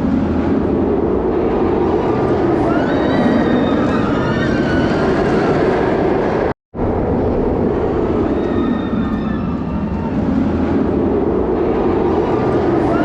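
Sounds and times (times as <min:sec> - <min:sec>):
train rumbling on rails: 0:00.0 - 0:13.0
faint high squealing: 0:08.1 - 0:10.4.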